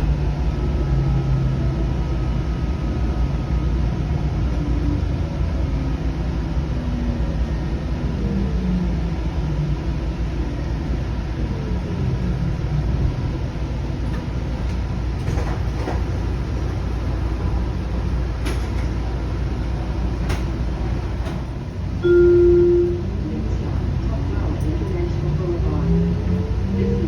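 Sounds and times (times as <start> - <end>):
train low rumble: 0.0 - 27.0
loud steady tone: 22.0 - 23.2.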